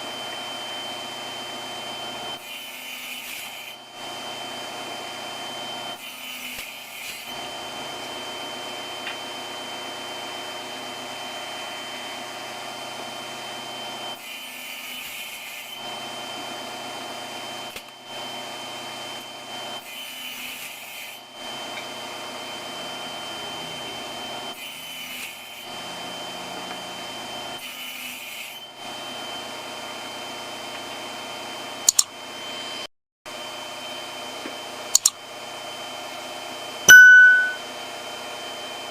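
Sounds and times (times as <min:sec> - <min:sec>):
table saw cutting wood: 0:01.9 - 0:03.8, 0:05.4 - 0:07.4, 0:14.1 - 0:16.3, 0:19.8 - 0:29.4.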